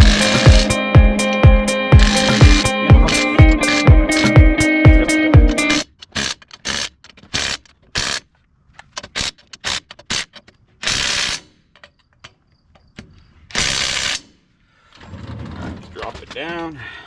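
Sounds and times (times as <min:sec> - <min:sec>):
ratchet wrench clicking: 0:00.0 - 0:01.4
dense rattling noise: 0:00.0 - 0:08.2.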